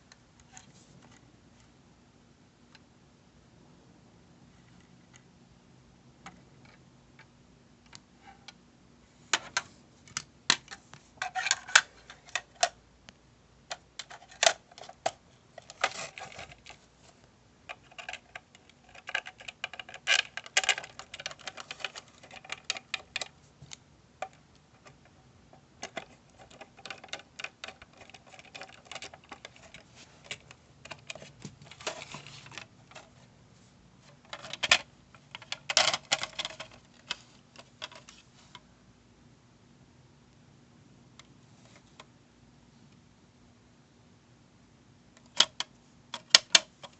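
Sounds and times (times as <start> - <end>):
hard objects clicking and rattling: 9.3 - 12.8, 17.7 - 33.2, 34.1 - 38.2.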